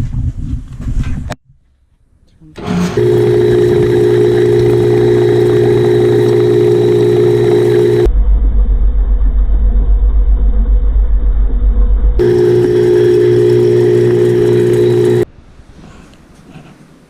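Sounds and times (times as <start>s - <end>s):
pressure washer running: 2.6s - 8.1s, 12.2s - 15.2s.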